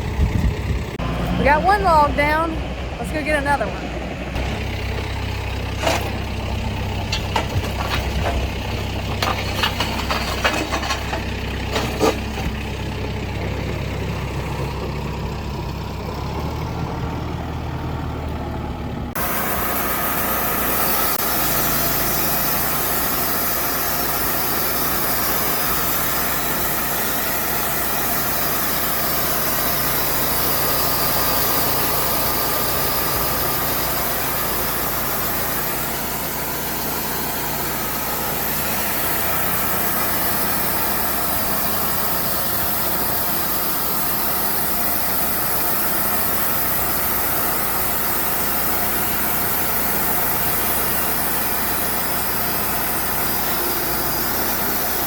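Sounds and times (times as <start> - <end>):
engine running: 0.0 - 55.0
hissy engine noise: 0.0 - 55.0
clanks and knocks: 5.8 - 6.3, 6.9 - 12.7.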